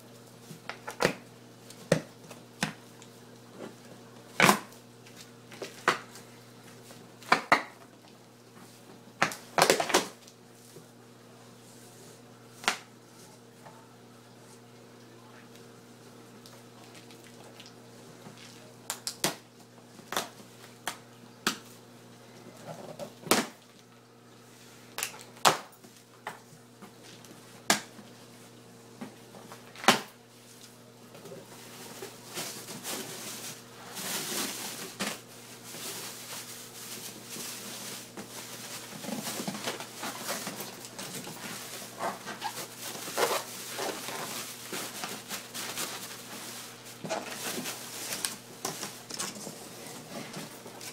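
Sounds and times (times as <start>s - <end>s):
faint electrical hum: 0.0s - 50.9s
packaging rustling and scraping: 31.5s - 50.9s.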